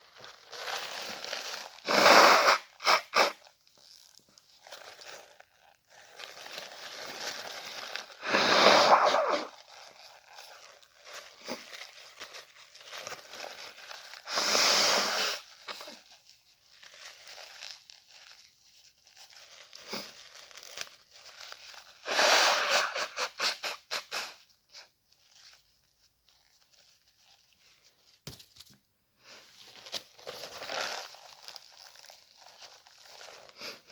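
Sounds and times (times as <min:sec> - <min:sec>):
person blowing nose: 0:01.8 - 0:03.4, 0:08.2 - 0:09.6, 0:14.2 - 0:16.0, 0:19.9 - 0:20.1, 0:22.0 - 0:24.5
person sneezing: 0:01.9 - 0:03.4, 0:08.2 - 0:09.5
sniffing: 0:08.2 - 0:09.5.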